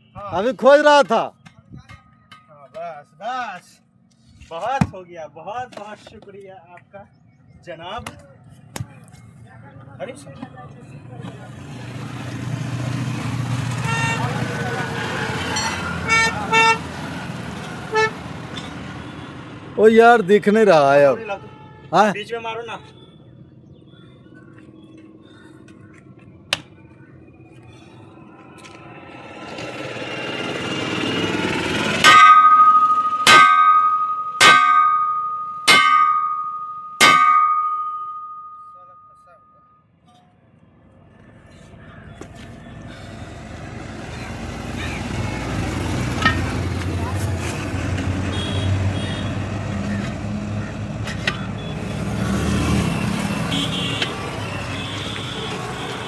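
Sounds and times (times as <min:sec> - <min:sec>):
vehicle engine running: 0:24.8 - 0:35.6, 0:41.8 - 0:56.0
hammer striking steel wheel rim: 0:32.0 - 0:38.7, 0:46.1 - 0:46.6.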